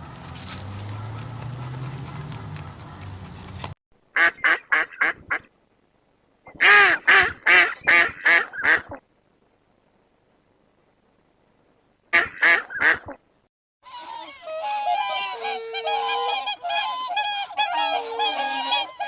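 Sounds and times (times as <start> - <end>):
bird calling: 14.0 - 19.0.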